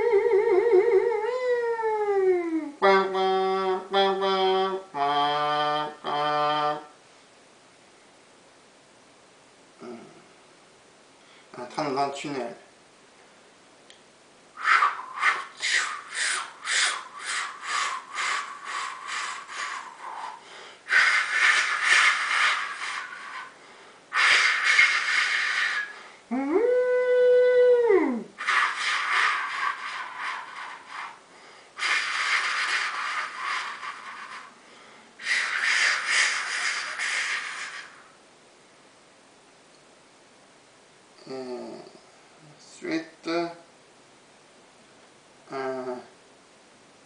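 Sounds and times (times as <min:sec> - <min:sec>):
vocal whistle-like hoot: 0:00.0 - 0:06.9, 0:14.6 - 0:31.2, 0:31.8 - 0:34.6, 0:35.2 - 0:38.2
mouth chugging puffs: 0:14.6 - 0:26.0, 0:28.4 - 0:31.2, 0:31.8 - 0:38.1
mouth rushing hisses: 0:14.6 - 0:26.4, 0:28.4 - 0:38.2.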